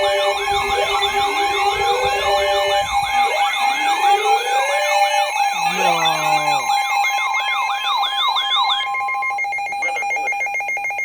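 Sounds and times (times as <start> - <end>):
alert sirens wailing: 0.0 - 6.8
steady alarm tone: 0.0 - 9.8.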